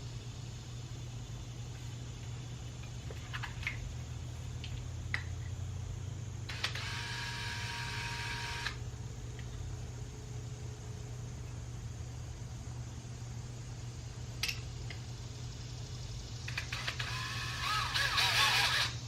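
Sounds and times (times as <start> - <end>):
steady low hum: 0.0 - 19.0
power drill boring through metal: 6.5 - 8.8, 16.8 - 19.0.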